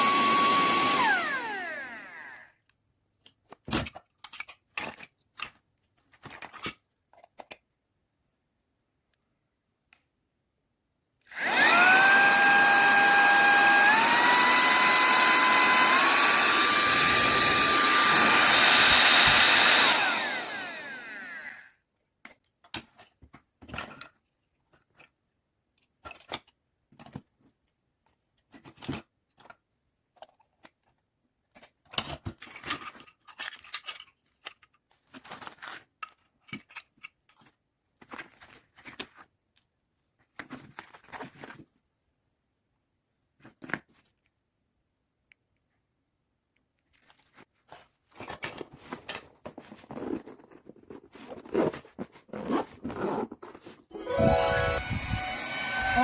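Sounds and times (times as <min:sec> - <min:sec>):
handheld vacuum cleaner motor whine: 0:00.0 - 0:02.5, 0:11.3 - 0:21.7, 0:53.9 - 0:56.0.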